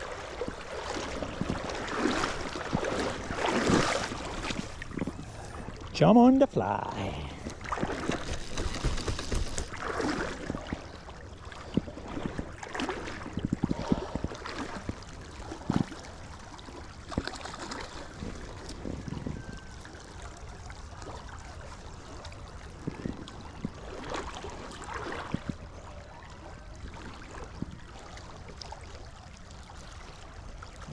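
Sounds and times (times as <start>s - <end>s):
river water flowing: 0.0s - 30.9s
water splashes: 0.0s - 30.9s.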